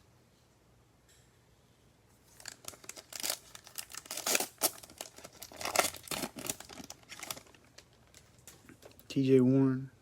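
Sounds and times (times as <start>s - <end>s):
foil wrapper tearing and crinkling: 2.3s - 9.1s.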